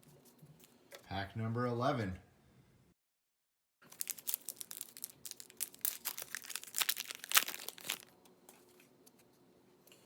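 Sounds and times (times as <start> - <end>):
foil wrapper tearing and crinkling: 3.9 - 8.1.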